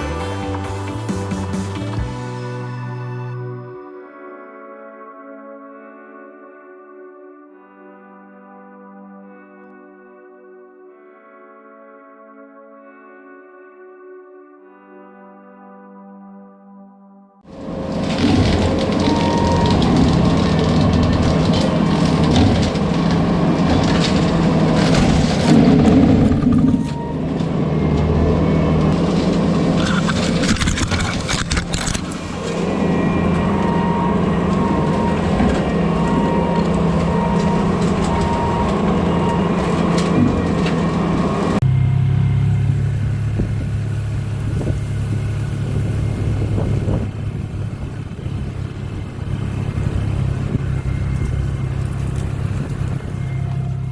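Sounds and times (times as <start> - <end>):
deep engine drone: 17.5 - 53.9
diesel engine running under load: 17.5 - 53.9.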